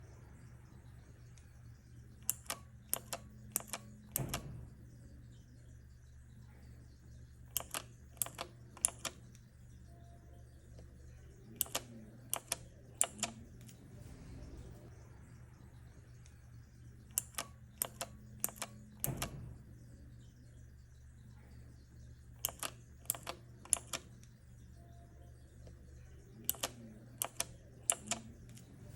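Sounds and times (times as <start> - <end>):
keycap keyring clicking: 2.2 - 4.4, 7.5 - 9.2, 11.6 - 13.8, 17.1 - 19.3, 22.4 - 24.1, 26.4 - 28.7.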